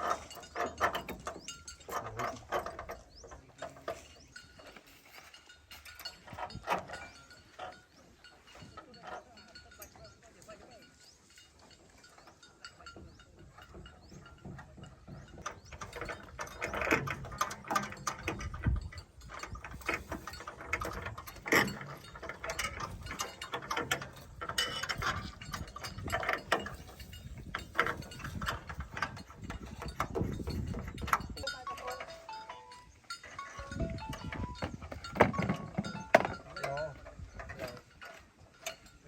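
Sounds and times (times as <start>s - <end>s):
metallic clanks and knocks: 0.0s - 39.0s
hand tool ratcheting: 15.5s - 38.9s.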